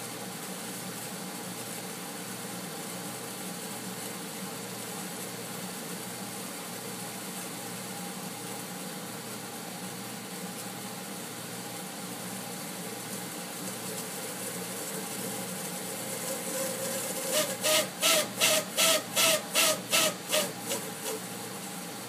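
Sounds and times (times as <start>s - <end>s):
heat pump hum: 0.0s - 22.0s
valve hissing pulses: 16.4s - 21.2s.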